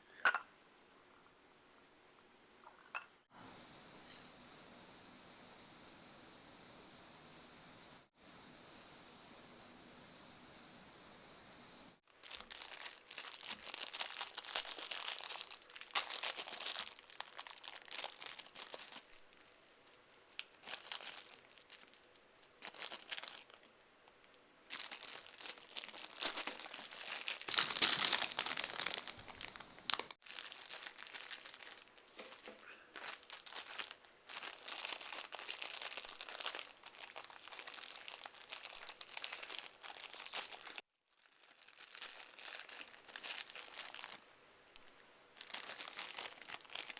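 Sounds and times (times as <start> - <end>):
plastic packaging crinkling: 12.1 - 46.9.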